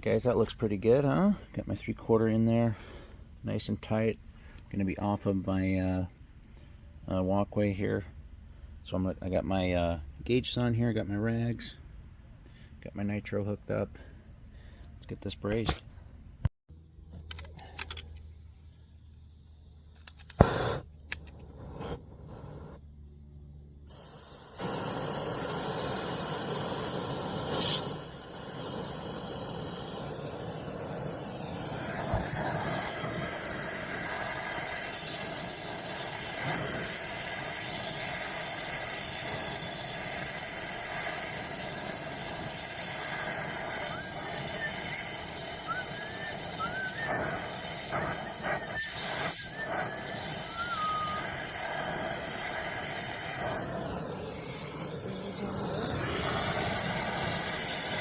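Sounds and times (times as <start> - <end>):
sharp click: 19.9 - 21.5
torch flame hissing: 20.3 - 22.8, 23.9 - 58.0.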